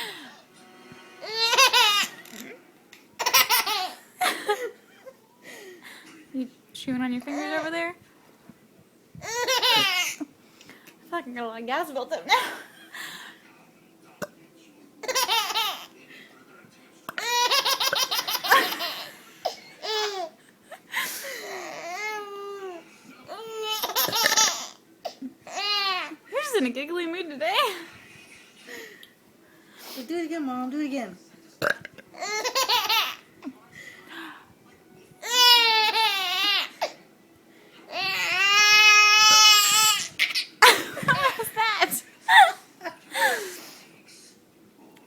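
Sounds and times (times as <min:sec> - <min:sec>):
baby laughing: 0:01.2 - 0:02.4, 0:03.2 - 0:05.1, 0:09.2 - 0:10.3, 0:15.0 - 0:15.9, 0:17.2 - 0:20.4, 0:23.4 - 0:26.1, 0:32.1 - 0:33.2, 0:35.2 - 0:36.9, 0:37.9 - 0:42.6
infant squealing: 0:37.9 - 0:40.4.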